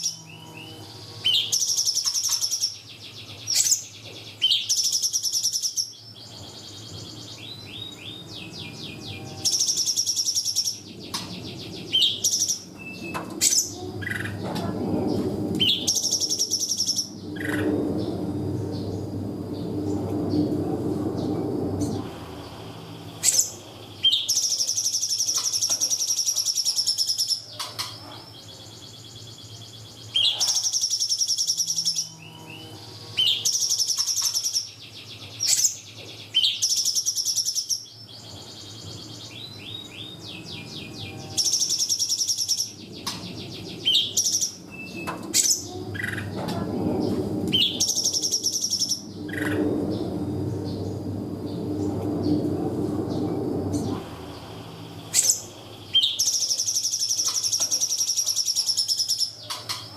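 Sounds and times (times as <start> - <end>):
rapid bird trills: 53.7 - 59.6.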